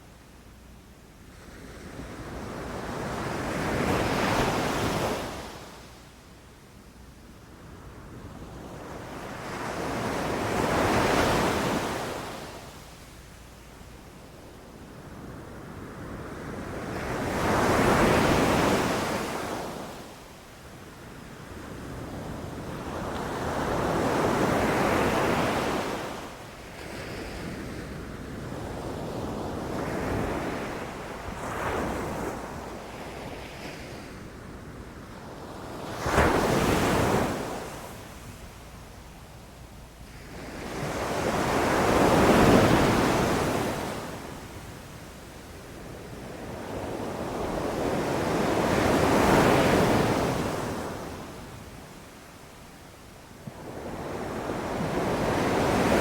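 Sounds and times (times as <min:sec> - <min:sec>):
ocean surf breaking on beach: 0:53.6 - 0:56.0.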